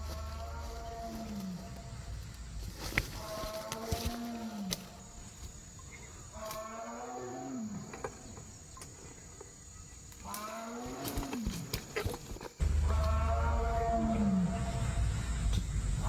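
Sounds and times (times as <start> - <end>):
animal calling: 12.6 - 16.0.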